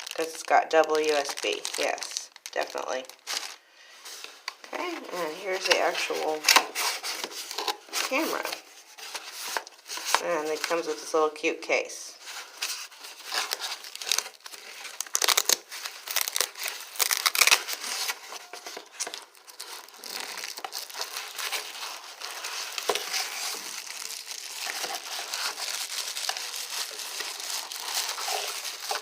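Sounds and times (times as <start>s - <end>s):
packaging crinkling and rustling: 0.0s - 11.2s, 12.2s - 29.0s.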